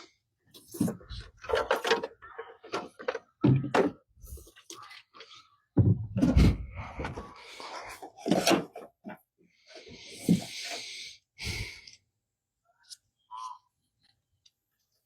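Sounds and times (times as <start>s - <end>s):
irregular knocks and clunks: 0.8s - 4.1s, 5.8s - 7.4s.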